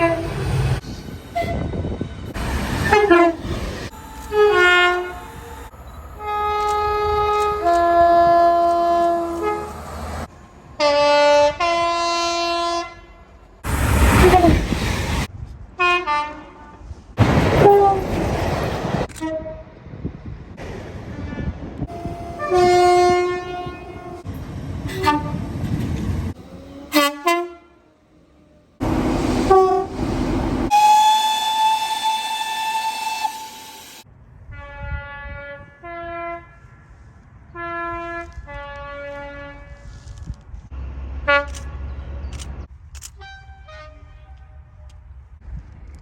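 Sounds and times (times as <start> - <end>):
train horns sounding: 0.0 - 10.1, 10.8 - 13.2, 15.8 - 18.2, 21.1 - 24.3, 24.9 - 25.5, 26.7 - 28.0, 29.4 - 40.0, 43.2 - 44.9
low rumble of trains: 0.0 - 46.0.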